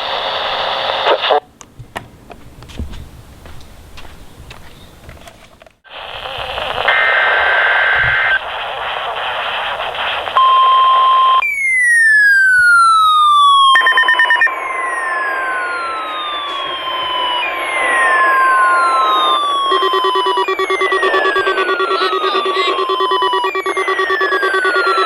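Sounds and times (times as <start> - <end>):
radio receiver hiss: 0.0 - 1.5, 5.9 - 11.4, 13.0 - 25.0
falling whistling tones: 10.4 - 25.0
digital data tones: 13.5 - 25.0
steady alert tone: 13.7 - 25.0.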